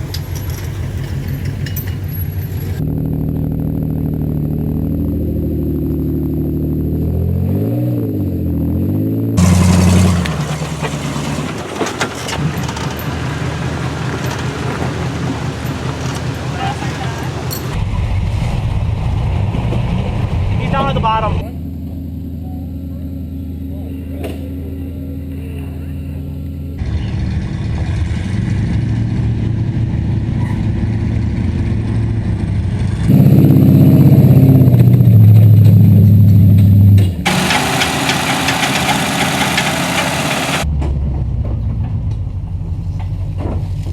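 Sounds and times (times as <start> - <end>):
off-road vehicle engine running: 0.0 - 43.9
sharp knocks and clatter: 9.4 - 17.8, 37.3 - 40.7.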